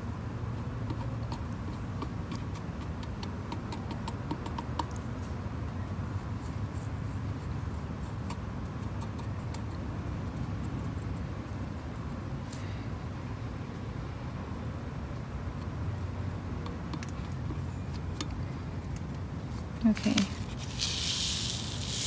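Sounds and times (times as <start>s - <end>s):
low background hum: 0.0s - 22.0s.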